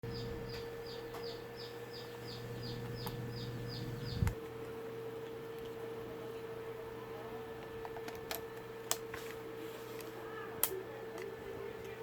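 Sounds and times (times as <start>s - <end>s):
bird chirping: 0.0s - 4.4s
electrical hum: 0.0s - 12.0s.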